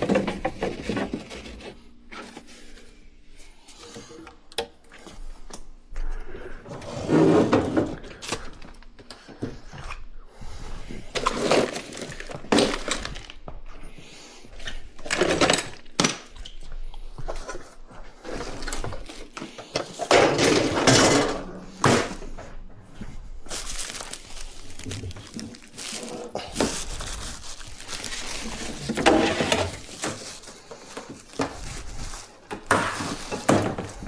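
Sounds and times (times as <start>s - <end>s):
hard objects clattering: 18.4s - 22.5s, 23.5s - 34.0s.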